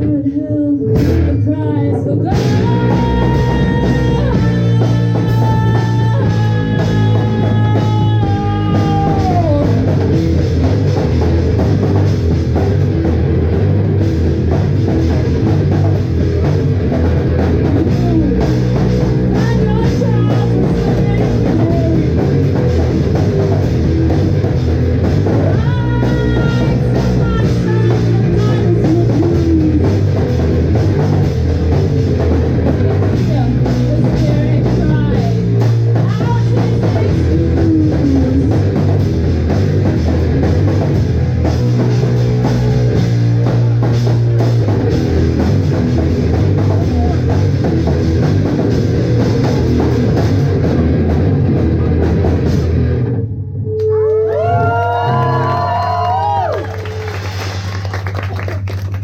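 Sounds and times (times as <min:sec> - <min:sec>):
rock band playing: 0:00.8 - 0:59.0
guitar notes sliding down: 0:36.9 - 0:57.6.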